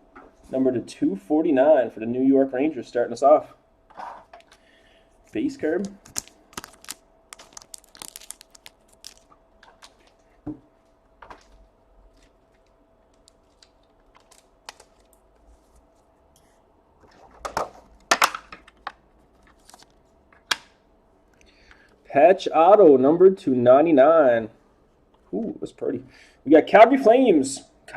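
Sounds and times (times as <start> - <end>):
faint steady hum: 0.0 - 27.9
trading cards clicking and rustling: 5.6 - 10.2, 12.1 - 15.3.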